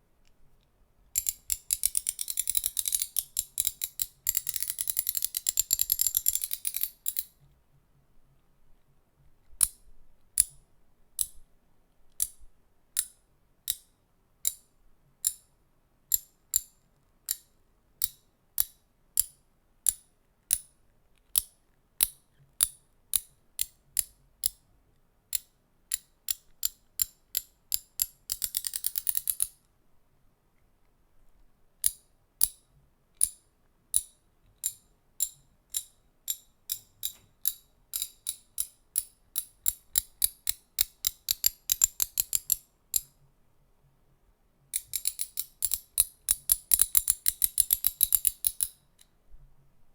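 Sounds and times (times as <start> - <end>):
handheld object clicking: 1.2 - 7.3, 25.3 - 29.6.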